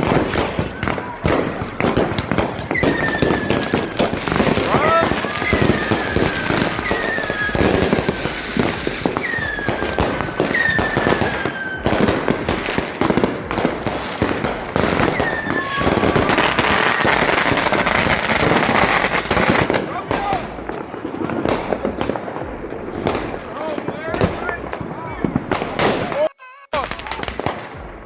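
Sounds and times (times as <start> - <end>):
firework whistles: 0.0 - 12.6, 14.8 - 19.6
firecrackers popping: 0.0 - 28.0.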